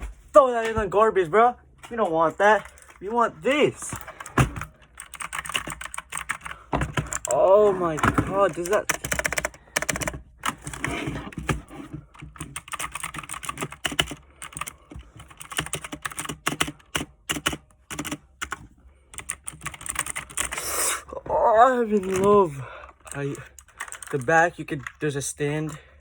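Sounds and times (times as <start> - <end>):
clicky mechanical keyboard keys: 4.1 - 10.9, 12.1 - 20.6, 21.9 - 25.0.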